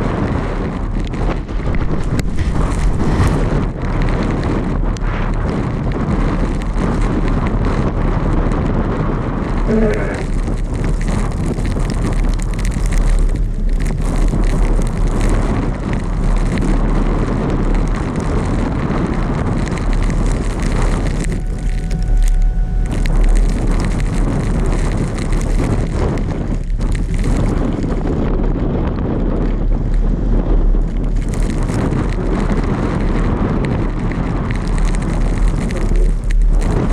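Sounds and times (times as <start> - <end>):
car driving rumble: 0.0 - 36.9
wind buffeting microphone: 0.0 - 36.9
faint steady tone: 21.0 - 24.7.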